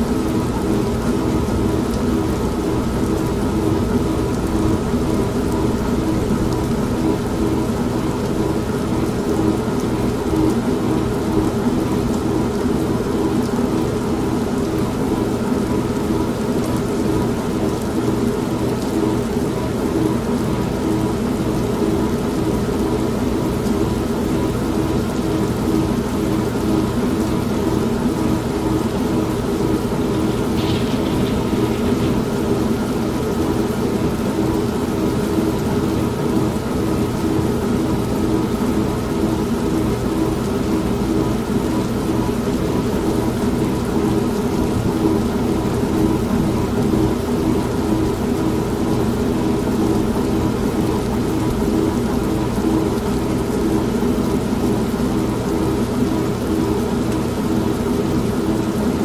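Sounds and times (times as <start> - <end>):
rain: 0.0 - 59.0
washing machine humming and churning: 0.0 - 59.0
low thunder rumble: 29.8 - 33.9.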